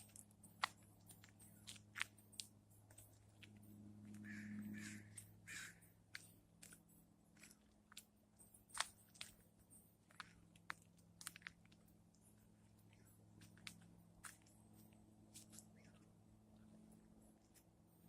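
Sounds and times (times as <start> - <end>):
steady low hum: 0.0 - 18.0
crow cawing: 4.2 - 5.9
sharp clicks and crunches: 8.7 - 12.2.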